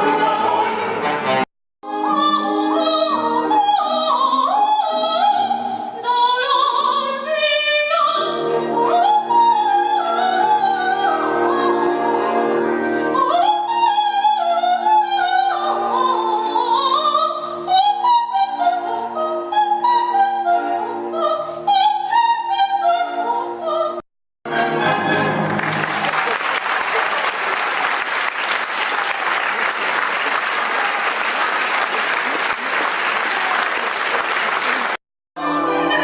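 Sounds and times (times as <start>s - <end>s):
orchestra playing: 0.0s - 1.4s, 8.2s - 13.8s, 24.5s - 27.3s, 35.4s - 36.0s
audience applause: 25.4s - 35.0s.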